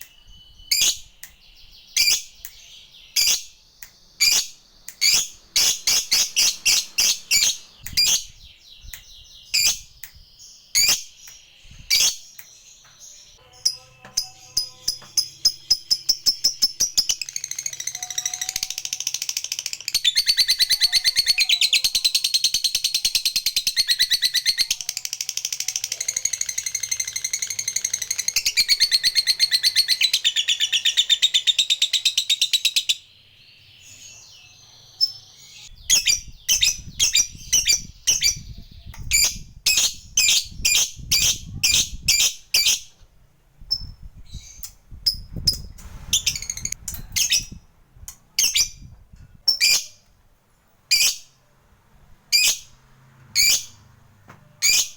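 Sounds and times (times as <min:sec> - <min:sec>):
bird high-pitched trill: 0:13.2 - 0:33.0, 0:43.8 - 0:47.6.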